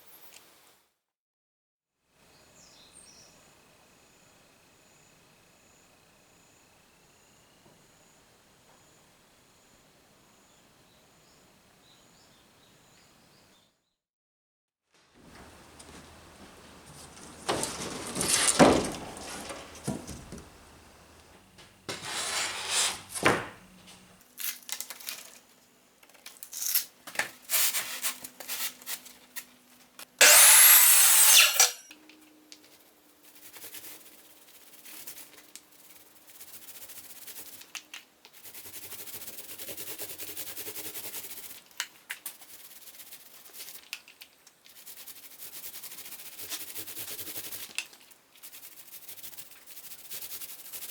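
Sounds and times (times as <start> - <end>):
scraping strokes on wood: 15.2 - 24.1, 30.2 - 31.9.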